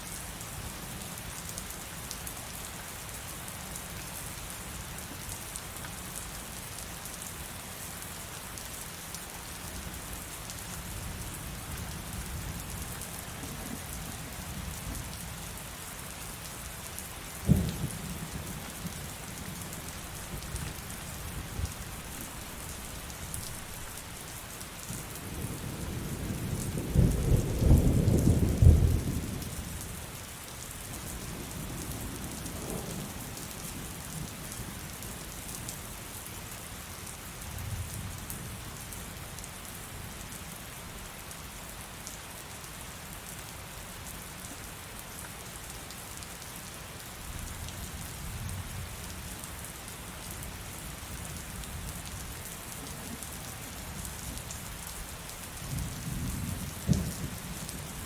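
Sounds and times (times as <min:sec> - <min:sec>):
heavy rain falling: 0:00.1 - 0:58.0
thunder rumbling: 0:55.7 - 0:57.8.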